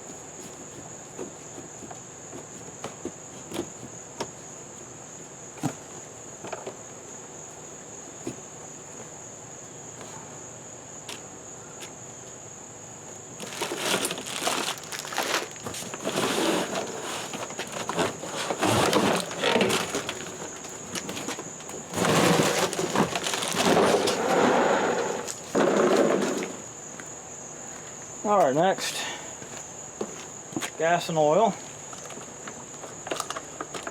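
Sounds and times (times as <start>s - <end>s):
rustling and knocking handling noise: 0.0s - 6.9s, 13.4s - 24.4s
crickets chirping: 0.0s - 33.9s.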